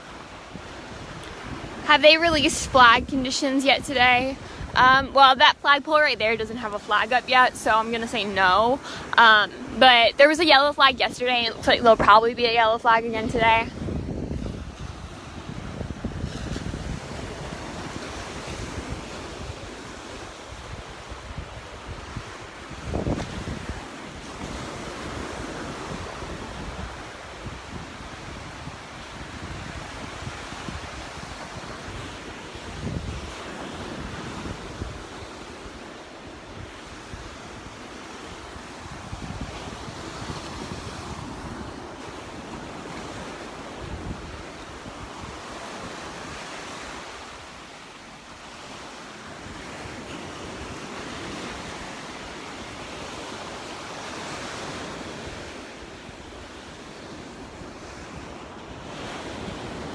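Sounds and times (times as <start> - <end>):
surf washing onto beach: 0.0 - 59.9
wind buffeting microphone: 0.0 - 59.9.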